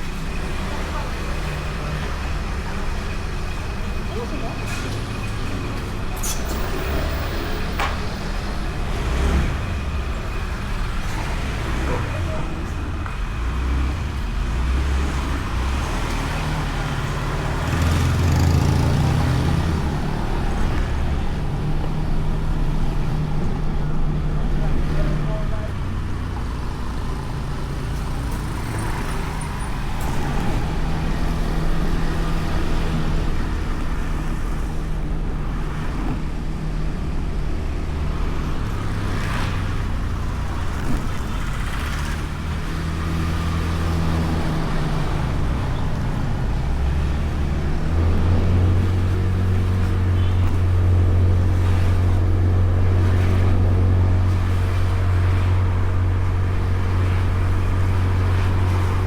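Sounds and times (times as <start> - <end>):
traffic noise: 0.0 - 59.0
scooter engine running: 17.6 - 19.2.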